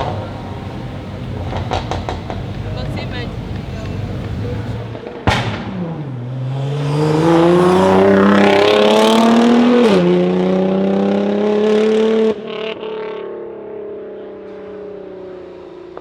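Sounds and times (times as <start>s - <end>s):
car engine accelerating hard: 0.0s - 16.0s.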